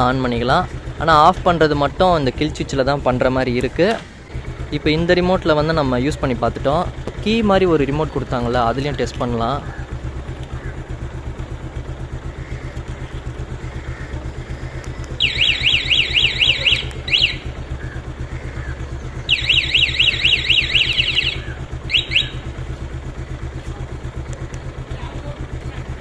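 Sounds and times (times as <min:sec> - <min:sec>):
motorcycle alarm siren warbling: 0:00.0 - 0:24.2
motorcycle engine idling: 0:00.0 - 0:26.0
alarm chirps: 0:15.2 - 0:17.8, 0:19.1 - 0:22.6.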